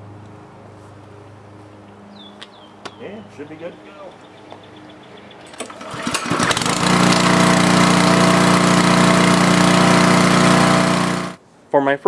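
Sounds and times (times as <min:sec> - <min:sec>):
pressure washer gas engine running: 0:05.6 - 0:11.4.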